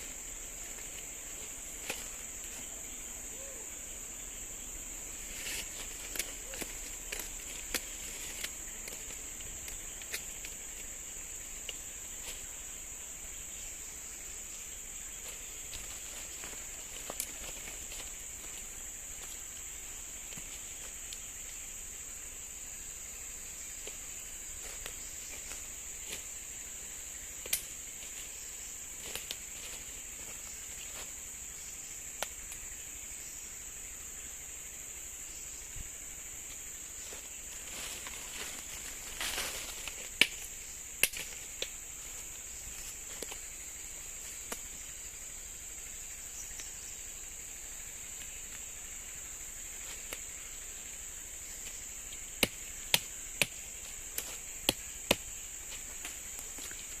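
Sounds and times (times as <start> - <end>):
forest insects droning: 0.0 - 57.0.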